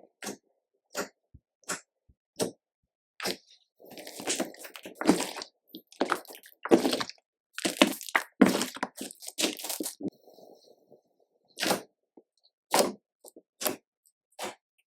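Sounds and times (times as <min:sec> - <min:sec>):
slime squished by hand: 0:04.0 - 0:10.1.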